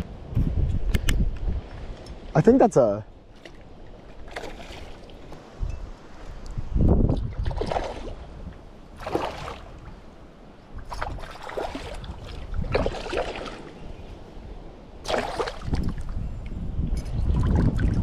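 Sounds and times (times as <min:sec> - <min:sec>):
creek water splashing: 0:03.3 - 0:05.6, 0:07.1 - 0:16.2.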